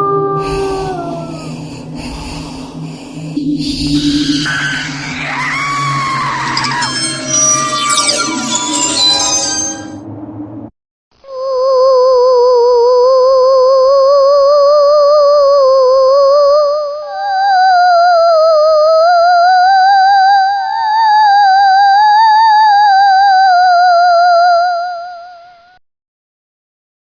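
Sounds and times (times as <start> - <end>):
wobbling electronic tone: 0.4 - 10.0
thin high whine: 0.4 - 10.1.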